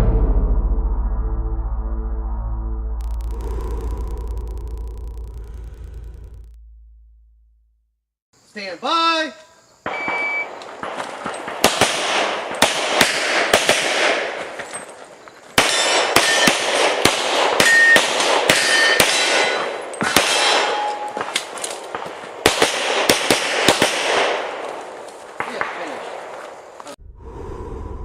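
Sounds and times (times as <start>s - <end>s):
rapid pistol fire echoing: 10.5s - 14.4s, 15.6s - 20.9s, 21.9s - 24.6s
bullets ringing on steel targets: 15.6s - 16.8s, 17.6s - 21.3s.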